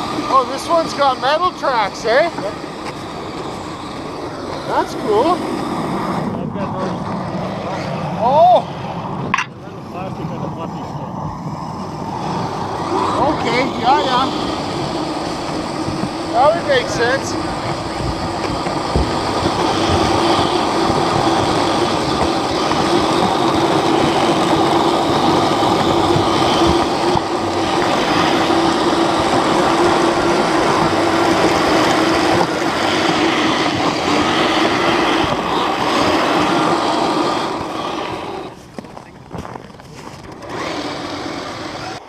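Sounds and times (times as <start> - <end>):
electric motor whine: 0.0 - 42.0
drivetrain clatter: 12.8 - 40.8.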